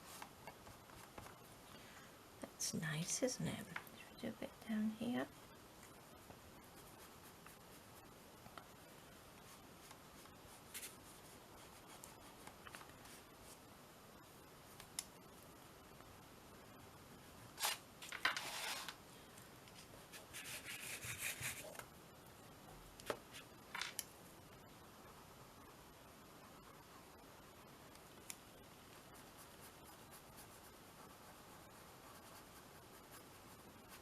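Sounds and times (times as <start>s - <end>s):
paintbrush scrubbing paper: 6.2s - 8.1s, 20.1s - 21.8s.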